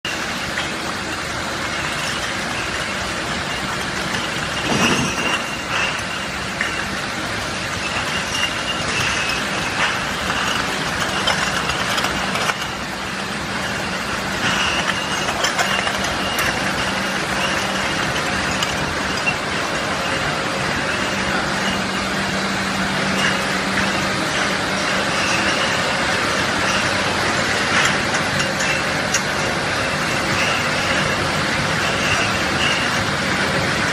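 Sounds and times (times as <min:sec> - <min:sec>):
bottle washing machine running: 0:00.0 - 0:33.9.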